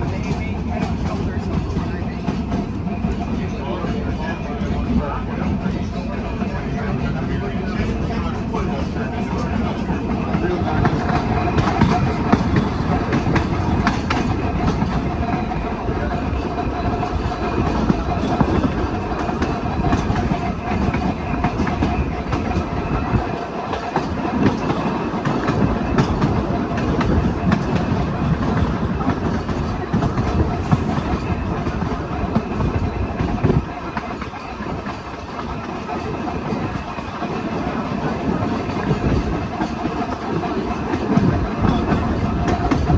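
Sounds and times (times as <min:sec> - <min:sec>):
streetcar rumble: 0:00.0 - 0:42.9
wheels clicking over rail joints: 0:07.7 - 0:42.9.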